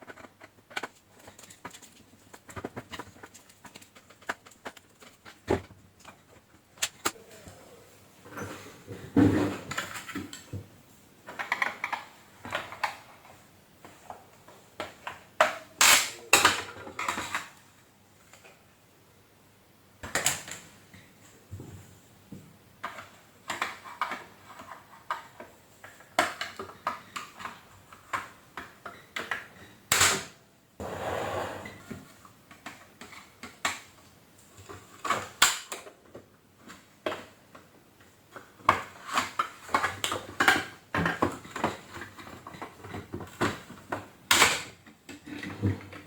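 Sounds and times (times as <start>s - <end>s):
plastic parts clicking and rattling: 0.0s - 7.2s, 11.2s - 14.1s, 22.8s - 30.3s, 32.5s - 46.0s
short scraping noise: 30.8s - 31.9s.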